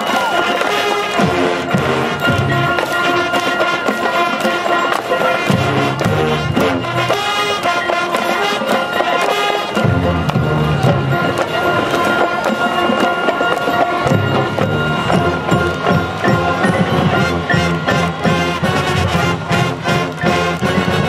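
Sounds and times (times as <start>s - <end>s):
drumline strokes: 0.0s - 21.0s
low brass: 0.4s - 11.7s, 16.8s - 21.0s
brass sustained chords: 0.7s - 11.3s, 17.2s - 21.0s.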